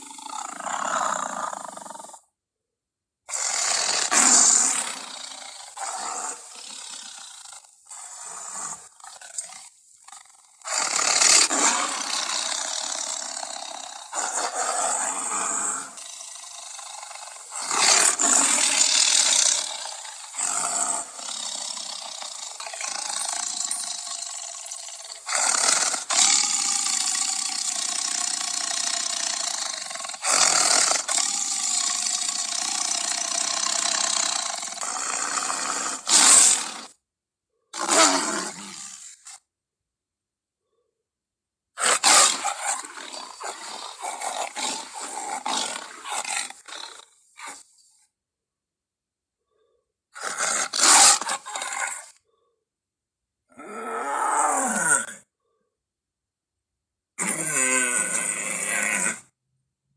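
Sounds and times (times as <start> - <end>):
dinosaur roars: 3.3 - 37.0, 37.8 - 39.4, 53.5 - 55.2, 57.2 - 59.3.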